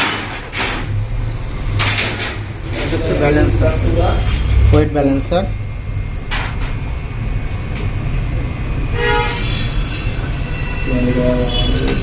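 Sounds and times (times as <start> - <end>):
steady low rumble: 0.9 - 9.0
horn sounding: 8.9 - 9.8, 10.4 - 12.0.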